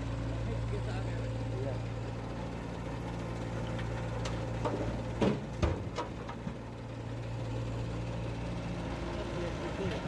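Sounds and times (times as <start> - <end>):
low machine hum: 0.0 - 10.0
sharp clicks and knocks: 3.7 - 6.6.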